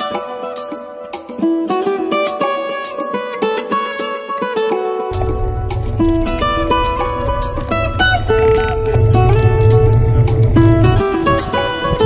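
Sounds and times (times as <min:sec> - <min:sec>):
plucked guitar melody: 0:00.0 - 0:12.0
bass line: 0:05.1 - 0:12.0.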